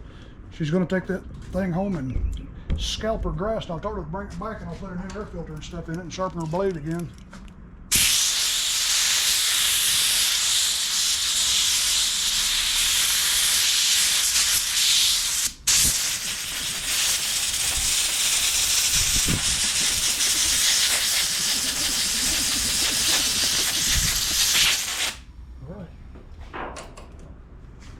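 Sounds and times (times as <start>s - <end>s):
compressed air blow gun hissing: 7.9s - 25.2s.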